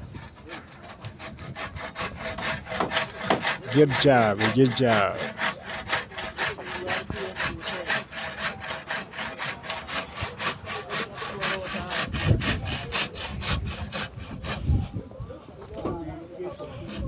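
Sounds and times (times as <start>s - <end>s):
hand saw cutting wood: 0.0s - 15.0s, 15.8s - 17.0s.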